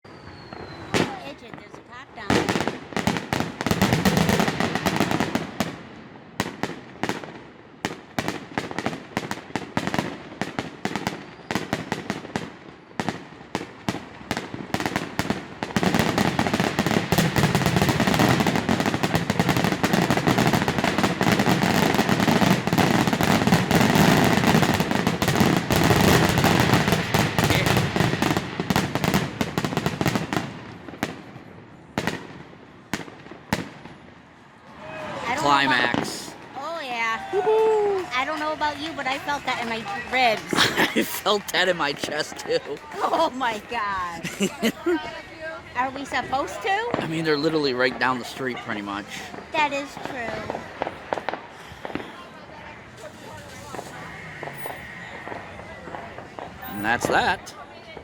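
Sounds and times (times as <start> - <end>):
fireworks bangs and crackle: 0.1 - 58.0
deep fireworks booms: 0.2 - 34.1, 35.5 - 36.8, 49.2 - 52.4, 53.2 - 58.0.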